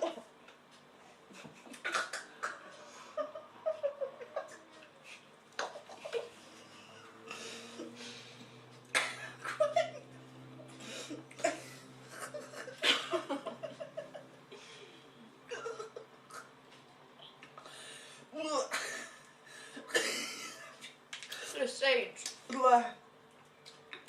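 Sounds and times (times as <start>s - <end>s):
people laughing and giggling: 2.6s - 4.9s, 11.4s - 14.4s
sharp breaths: 6.5s - 8.8s.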